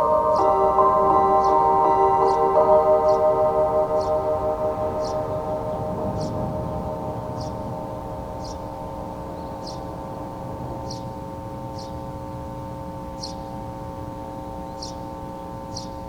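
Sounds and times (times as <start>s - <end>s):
chime chord over loudspeaker: 0.0s - 9.6s.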